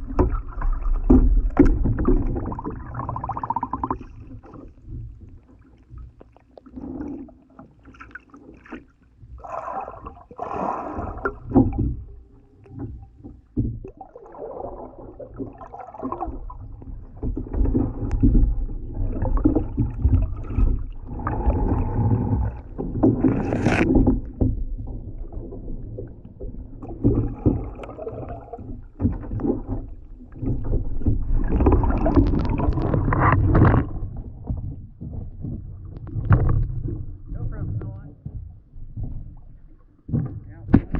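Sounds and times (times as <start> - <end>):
water sloshing: 0.0 - 40.9
paddle strokes splashing: 3.8 - 34.2
low rumble: 30.8 - 40.9.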